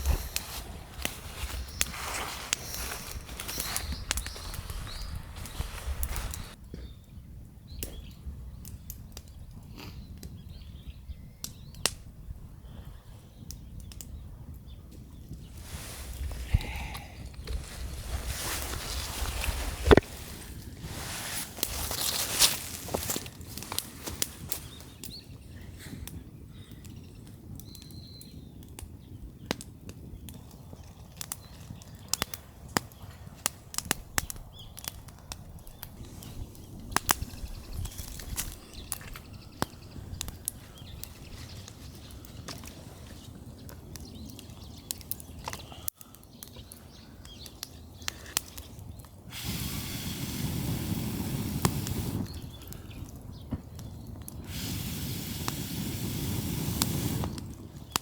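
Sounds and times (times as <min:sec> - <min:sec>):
wood fire crackling and popping: 0:00.0 - 0:06.6, 0:07.7 - 0:12.4, 0:13.4 - 0:25.4, 0:26.0 - 0:58.0
rushing hiss: 0:49.3 - 0:52.3, 0:54.5 - 0:57.4.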